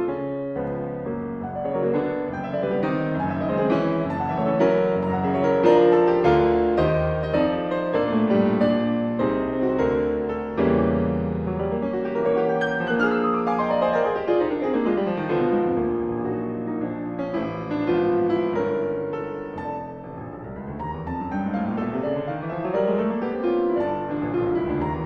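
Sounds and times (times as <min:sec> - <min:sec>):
piano music: 0:00.0 - 0:25.0.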